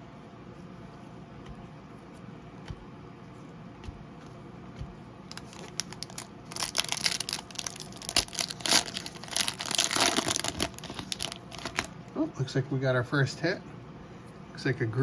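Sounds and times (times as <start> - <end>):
wrapper crinkling and tearing: 5.3 - 12.0.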